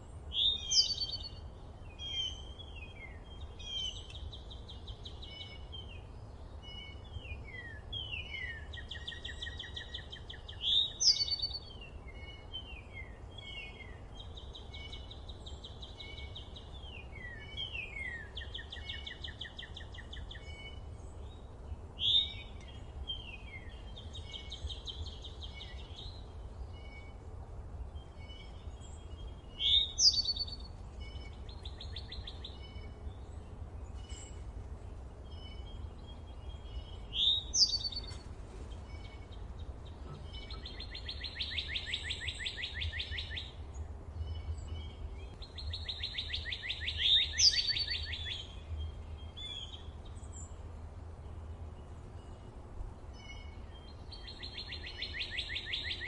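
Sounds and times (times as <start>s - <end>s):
birds singing and chirping: 0.0s - 56.0s
loud sweeping bird calls: 35.3s - 43.7s, 44.4s - 50.6s, 53.1s - 56.0s.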